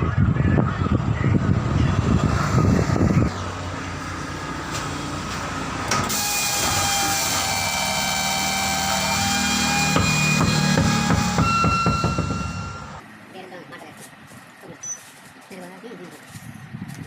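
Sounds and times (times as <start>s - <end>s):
power tool whining: 5.9s - 13.0s.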